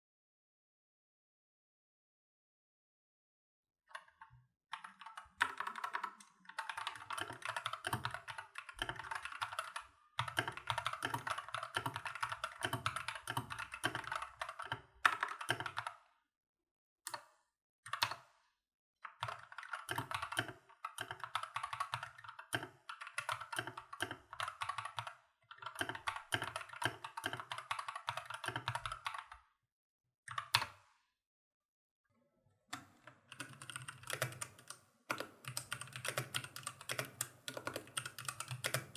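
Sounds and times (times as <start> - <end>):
mechanical keyboard typing: 4.7 - 15.9, 19.2 - 29.4, 33.3 - 38.9.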